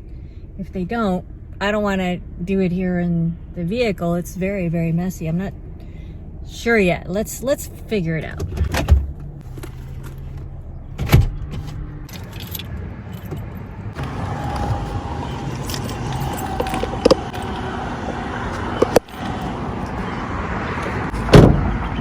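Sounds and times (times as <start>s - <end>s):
low hum: 11.8s - 22.0s
keys jangling: 12.1s - 17.6s
loud thump: 21.2s - 21.8s.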